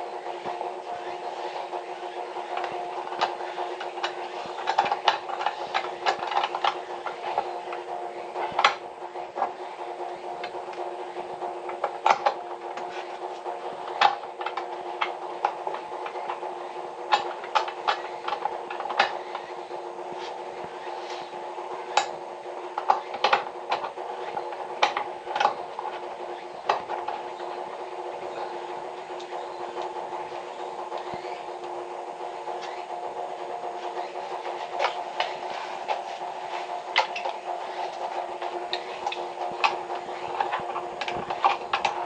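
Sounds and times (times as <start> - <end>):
steady hum with held tones: 0.0 - 42.0.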